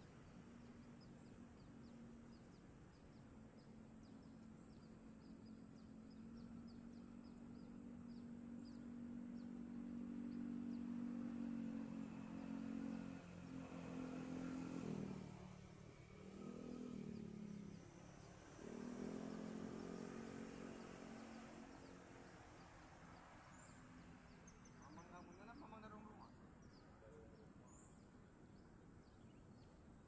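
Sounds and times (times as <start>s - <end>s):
high pulsing insect buzz: 2.2s - 26.8s
small engine running: 5.7s - 23.6s.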